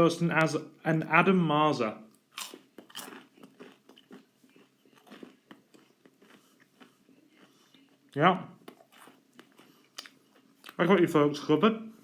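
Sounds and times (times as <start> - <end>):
person chewing food: 2.1 - 10.8.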